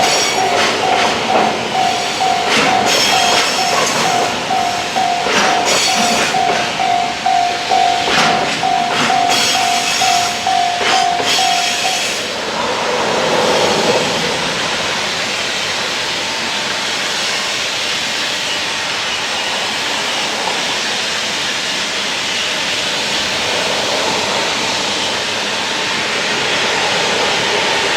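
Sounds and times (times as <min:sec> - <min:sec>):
level-crossing bell clanging: 0:00.0 - 0:12.7
train wheels rushing on rails: 0:00.0 - 0:27.9.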